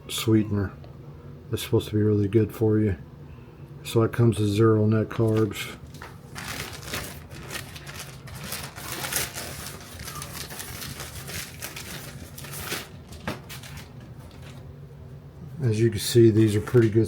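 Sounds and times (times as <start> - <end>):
plastic packaging crinkling: 5.2 - 14.7, 16.2 - 17.0.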